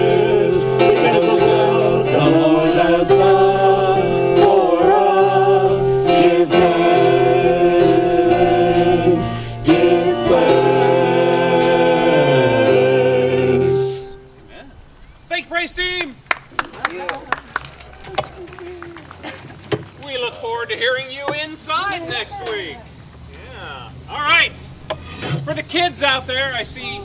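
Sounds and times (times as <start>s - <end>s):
voices singing gospel song: 0.0s - 14.4s
sustained accompaniment: 0.0s - 14.6s.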